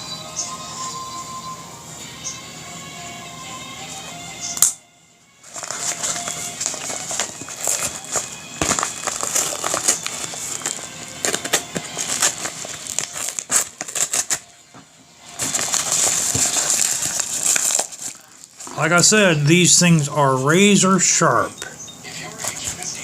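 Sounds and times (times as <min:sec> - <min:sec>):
packaging crinkling: 0:05.4 - 0:19.0.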